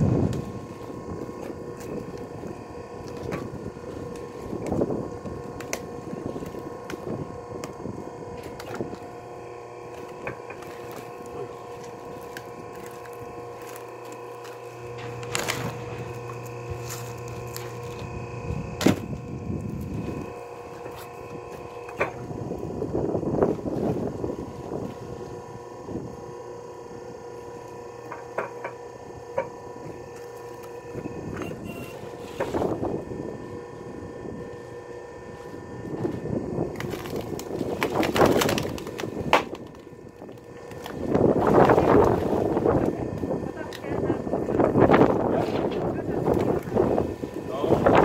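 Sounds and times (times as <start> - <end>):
log splitter motor hum: 0.0 - 48.0
wood cracking: 0.1 - 22.2, 36.0 - 43.9.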